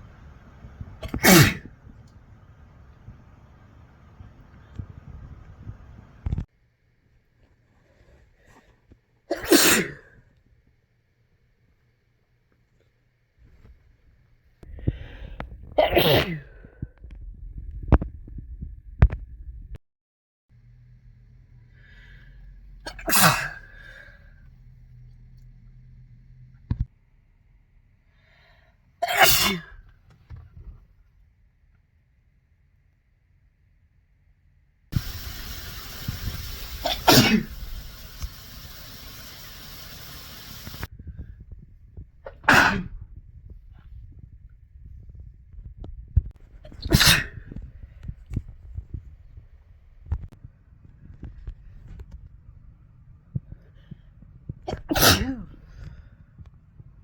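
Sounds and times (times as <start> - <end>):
person sneezing: 1.0 - 1.7, 9.3 - 10.2, 15.8 - 16.6, 22.9 - 23.9, 29.0 - 29.8, 36.6 - 38.4, 42.3 - 43.0, 46.7 - 47.5, 54.7 - 55.6
breathy intake: 35.0 - 40.9
steady hiss: 35.0 - 40.9.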